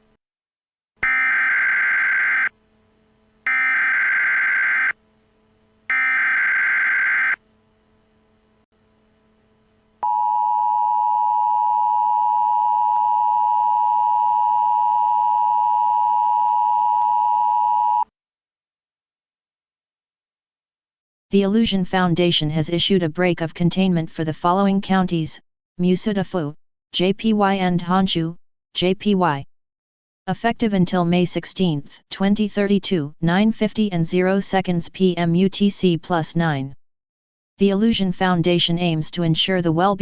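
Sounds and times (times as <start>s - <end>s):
alert data bursts: 5.9s - 7.4s
two-tone attention signal: 5.9s - 7.4s, 10.0s - 18.0s.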